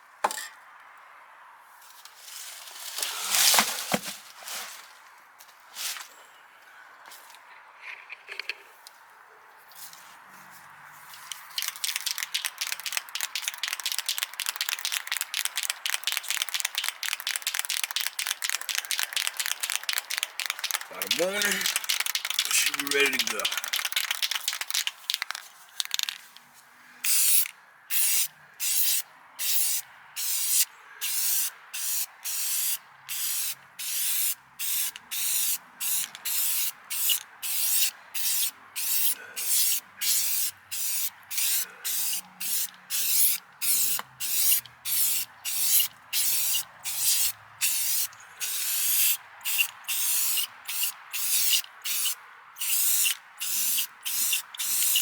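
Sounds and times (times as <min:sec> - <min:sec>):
spray paint can hissing: 0:11.3 - 0:26.2, 0:27.0 - 0:55.0.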